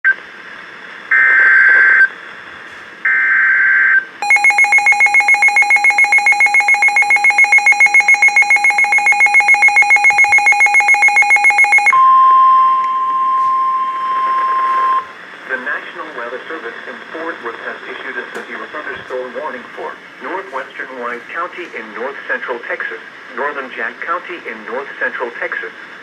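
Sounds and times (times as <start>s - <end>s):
steady alarm tone: 3.1s - 15.2s
screeching digital header data: 4.2s - 11.9s
pulsing electronic alarm beeps: 4.2s - 15.1s.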